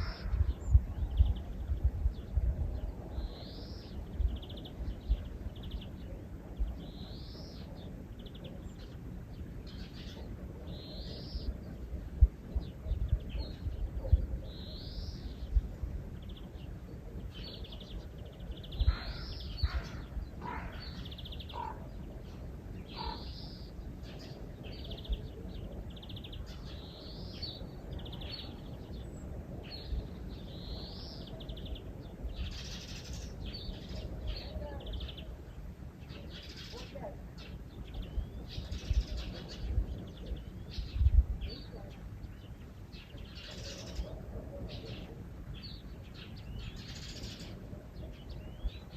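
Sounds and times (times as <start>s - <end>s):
steady low rumble: 0.0s - 32.5s
small birds chirping and trilling: 0.0s - 48.9s.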